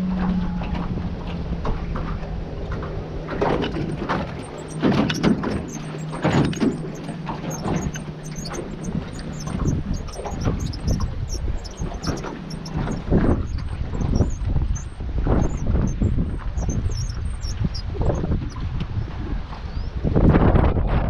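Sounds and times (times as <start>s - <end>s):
motorboat engine humming: 0.0s - 21.0s
sharp knocks and clatter: 1.3s - 13.4s.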